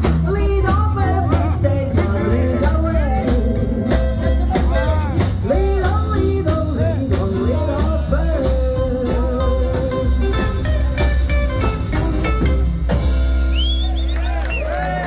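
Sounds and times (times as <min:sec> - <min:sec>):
woman singing: 0:00.0 - 0:10.5, 0:11.7 - 0:12.6
rhythm and blues band playing: 0:00.0 - 0:15.0.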